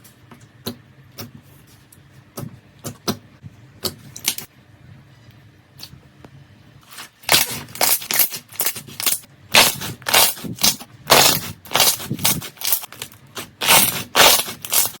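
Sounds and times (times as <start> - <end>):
slime crust crunching: 6.9 - 15.0.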